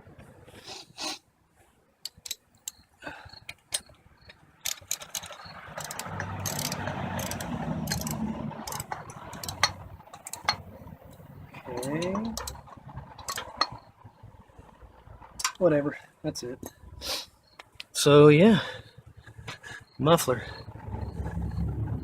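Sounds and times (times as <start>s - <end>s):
metallic clicks and knocks: 2.0s - 2.8s, 3.5s - 13.9s.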